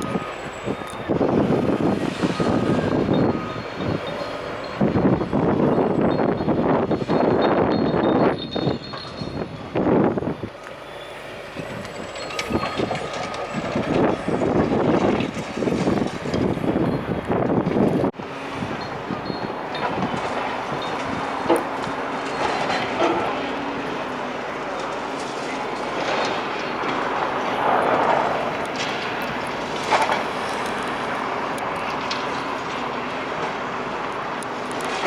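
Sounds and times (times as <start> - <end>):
demolition machinery crunching: 0.0 - 35.0.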